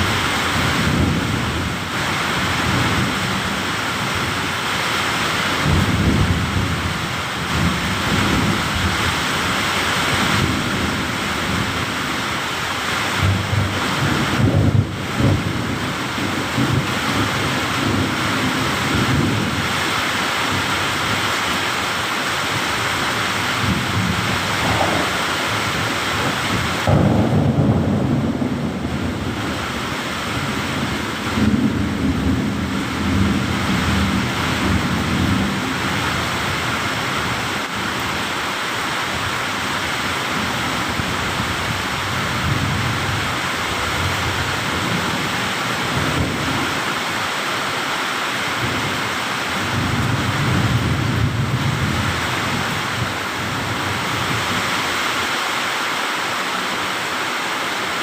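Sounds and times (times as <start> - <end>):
thunder rumbling: 0.0 - 38.3, 39.2 - 47.2
heavy rain falling: 0.0 - 58.0.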